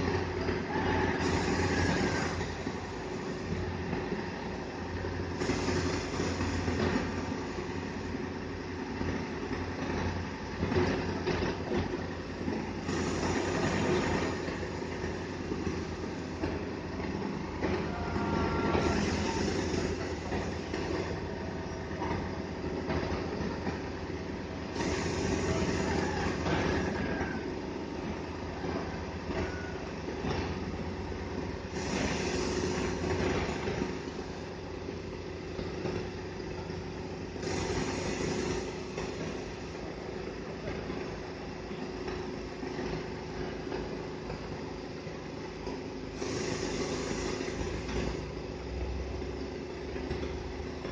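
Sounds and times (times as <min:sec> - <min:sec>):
hiss: 0:00.0 - 0:08.5, 0:12.6 - 0:17.0, 0:17.6 - 0:23.9, 0:24.7 - 0:27.6, 0:31.3 - 0:41.4, 0:45.7 - 0:49.0
heavy diesel engine running: 0:00.0 - 0:50.9.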